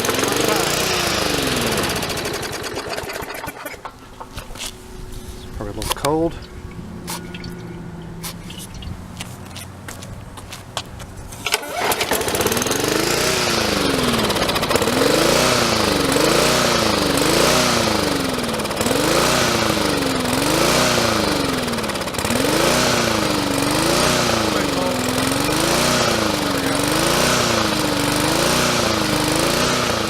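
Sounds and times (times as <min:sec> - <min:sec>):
engine starter clicks: 0:00.0 - 0:04.8, 0:11.4 - 0:15.8
lawn mower engine running: 0:00.0 - 0:30.0.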